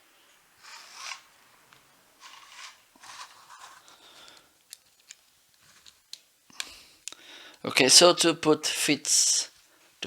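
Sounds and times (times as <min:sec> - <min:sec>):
tape measure rustling and scraping: 0:00.6 - 0:04.0.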